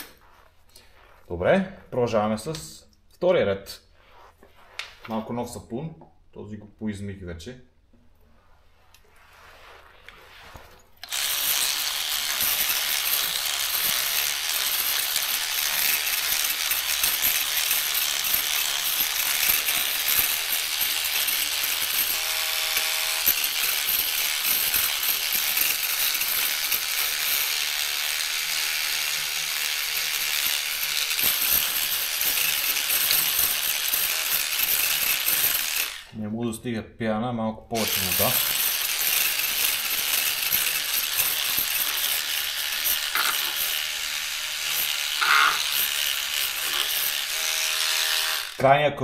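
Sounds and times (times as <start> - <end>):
electric brush scrubbing plastic keys: 10.0 - 36.2, 37.8 - 48.6.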